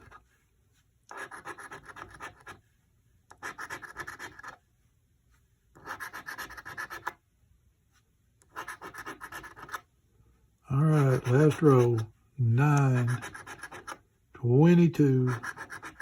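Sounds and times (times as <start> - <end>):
scratching lottery ticket coating: 1.1 - 2.6, 3.4 - 4.6, 5.8 - 7.2, 8.5 - 9.8, 10.7 - 14.0, 14.6 - 16.0.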